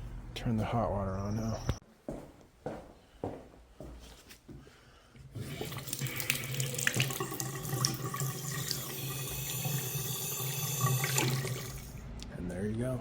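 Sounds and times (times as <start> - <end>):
faucet opening: 5.4 - 11.9
water running into sink: 5.4 - 11.9.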